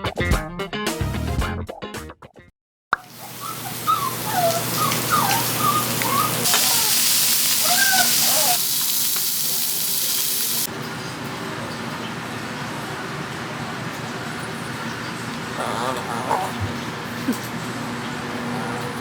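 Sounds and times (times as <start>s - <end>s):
outdoor ambience hiss: 3.0s - 10.7s
small birds chirping: 3.1s - 10.7s.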